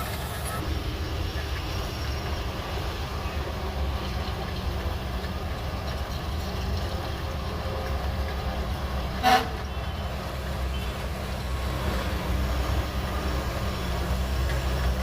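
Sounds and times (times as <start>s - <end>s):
bulldozer engine drone: 0.0s - 15.0s.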